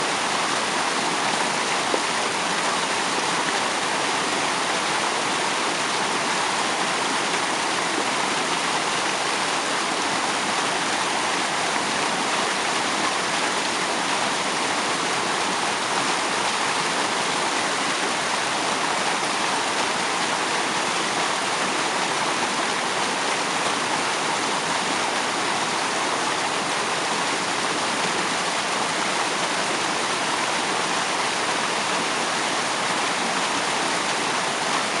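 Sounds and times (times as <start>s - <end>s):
waterfall rushing: 0.0s - 35.0s.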